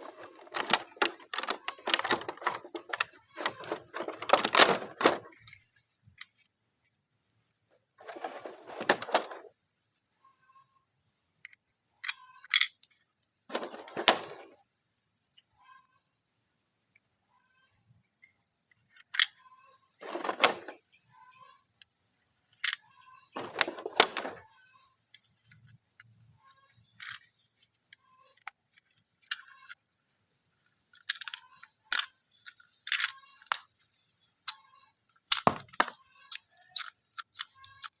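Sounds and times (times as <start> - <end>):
packaging rustling: 0.0 - 5.4, 8.0 - 9.5, 13.5 - 14.5, 20.0 - 20.8, 23.4 - 24.4
plastic clicks and clacks: 0.0 - 5.6, 8.0 - 9.5, 11.5 - 14.6, 20.0 - 20.8, 23.4 - 24.4, 27.0 - 27.3, 30.9 - 33.7, 35.3 - 38.0.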